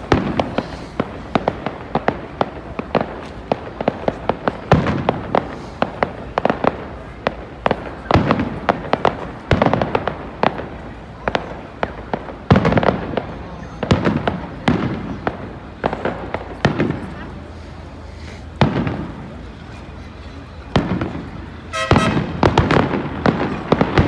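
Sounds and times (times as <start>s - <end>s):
fireworks crackling pops: 0.0s - 24.0s
firework shell bursts: 20.8s - 24.0s.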